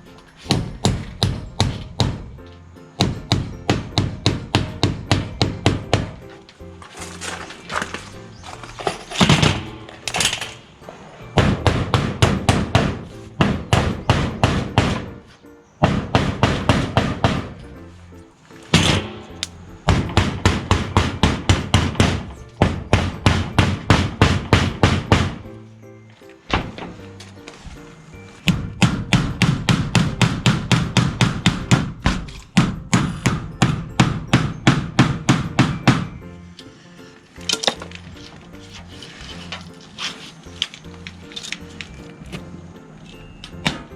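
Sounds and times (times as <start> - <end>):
background music: 0.0 - 43.9
hammer driving nails: 0.4 - 2.4, 3.0 - 10.8, 11.4 - 17.7, 18.7 - 25.5, 28.4 - 36.2, 37.4 - 42.4, 43.2 - 43.9.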